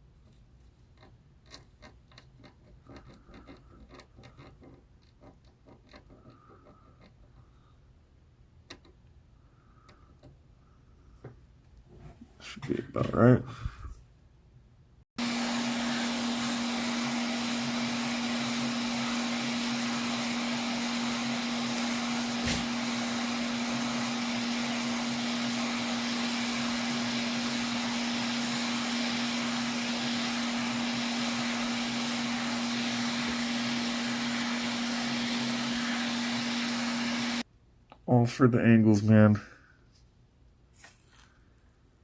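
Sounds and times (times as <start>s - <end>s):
hot air station blowing: 15.2s - 37.5s.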